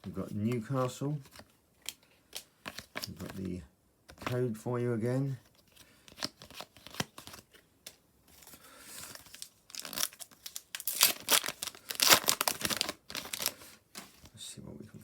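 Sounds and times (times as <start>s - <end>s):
wrapper tearing and crinkling: 9.0s - 13.8s.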